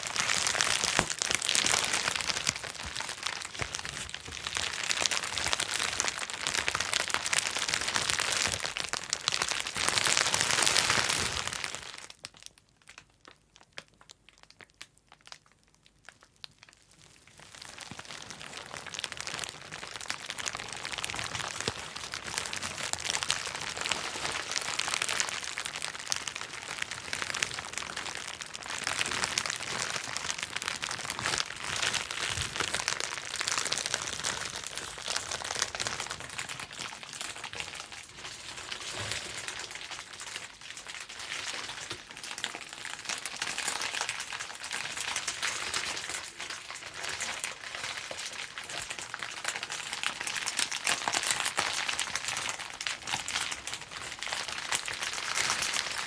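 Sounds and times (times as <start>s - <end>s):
bubble wrap popping: 0.0s - 56.0s.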